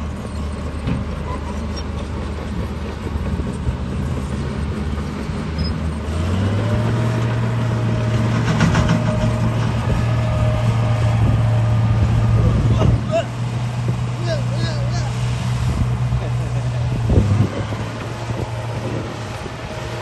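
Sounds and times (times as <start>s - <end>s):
bulldozer diesel engine running: 0.0s - 20.0s.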